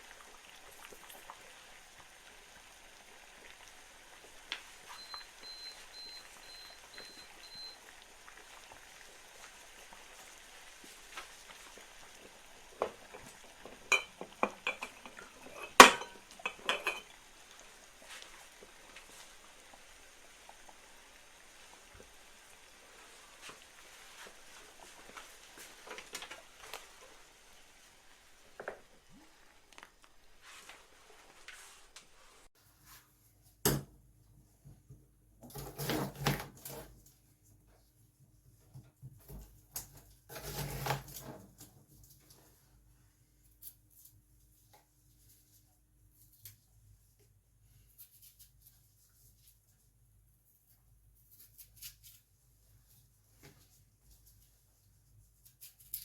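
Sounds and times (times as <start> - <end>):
glass jars clinking and knocking: 13.1 - 17.1.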